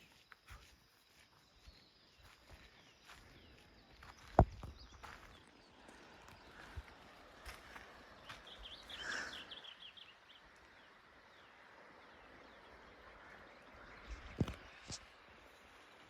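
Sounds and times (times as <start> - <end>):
bird chirping: 0.0 - 16.0
faint outdoor background: 0.0 - 16.0.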